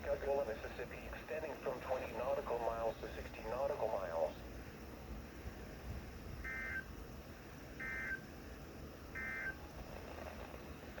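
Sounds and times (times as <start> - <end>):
radio hiss: 0.0 - 4.8.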